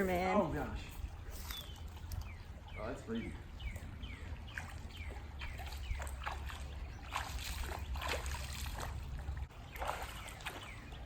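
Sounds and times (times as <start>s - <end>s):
person wading splashing water: 3.6s - 11.0s.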